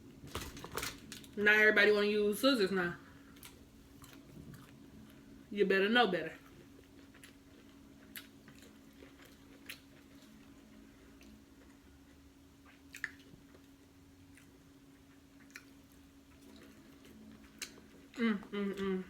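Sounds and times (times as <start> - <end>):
low steady hum: 0.0 - 19.0
wet chewing of seafood: 6.4 - 18.2.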